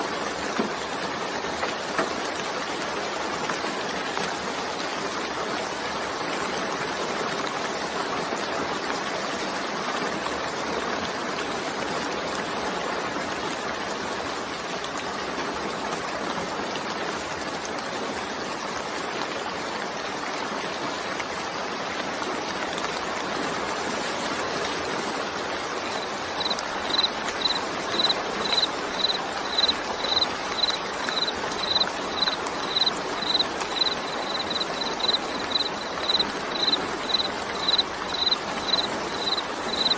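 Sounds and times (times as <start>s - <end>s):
steady rain falling: 0.0s - 39.9s
insect chirping: 25.9s - 39.9s.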